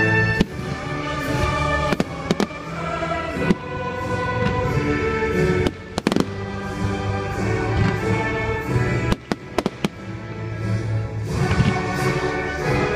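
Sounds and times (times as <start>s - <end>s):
music: 0.0s - 12.9s
fireworks bangs: 5.6s - 6.5s.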